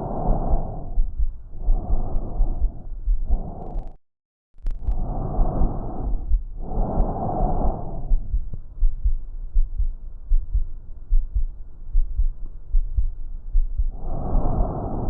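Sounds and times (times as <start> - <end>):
breathing through stethoscope: 0.0 - 4.0, 4.8 - 8.4, 13.9 - 15.0
heartbeat thumping: 0.0 - 4.0, 4.7 - 14.9.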